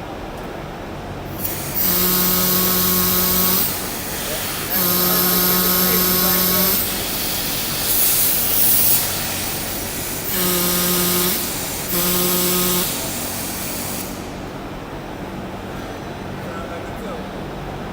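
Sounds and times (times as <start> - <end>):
hydraulic valve whine: 1.3 - 14.6
high hissing: 1.4 - 14.5.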